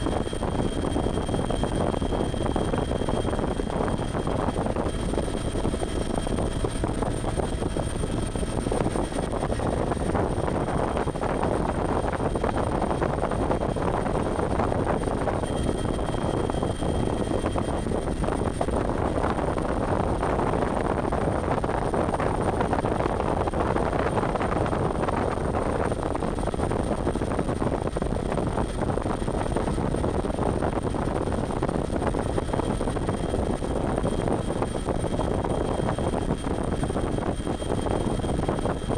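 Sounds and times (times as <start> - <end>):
faint high whine: 0.0 - 20.8
helicopter engine and rotor drone: 0.0 - 38.9.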